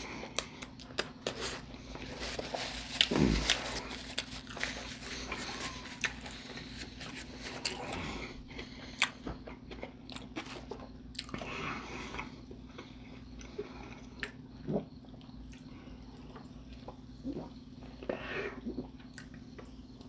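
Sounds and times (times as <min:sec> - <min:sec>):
person chewing food: 0:00.0 - 0:15.7.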